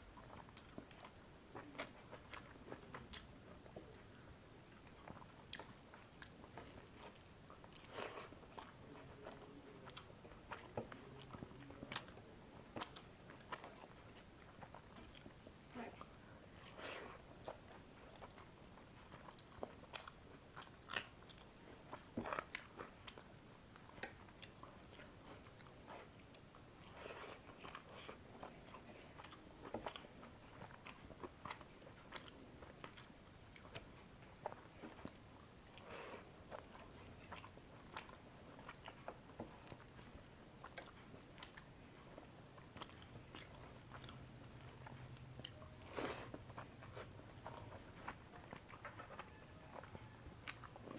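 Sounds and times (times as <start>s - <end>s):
person chewing food: 0.0s - 50.9s.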